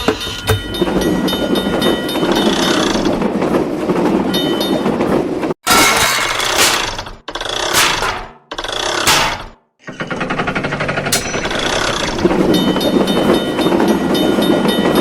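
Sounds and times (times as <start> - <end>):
train rumbling by: 0.0 - 5.6, 11.2 - 15.0
faint metallic ringing: 11.1 - 14.4.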